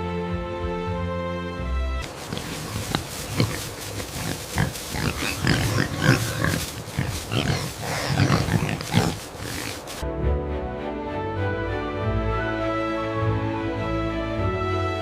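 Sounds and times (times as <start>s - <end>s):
piglets squealing and grunting: 2.2s - 10.0s.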